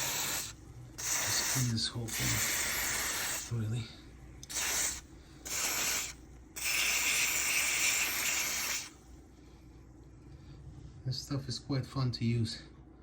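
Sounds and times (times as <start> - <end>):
aerosol can spraying: 0.0 - 3.6, 4.4 - 9.0.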